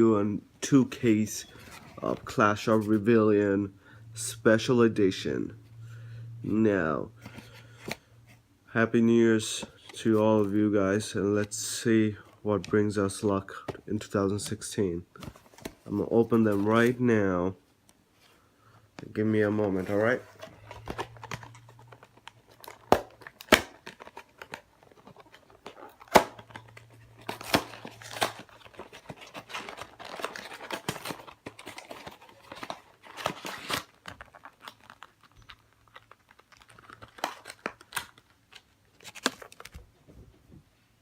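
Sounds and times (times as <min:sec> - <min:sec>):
plastic wrap crinkling and tearing: 0:19.7 - 0:39.8.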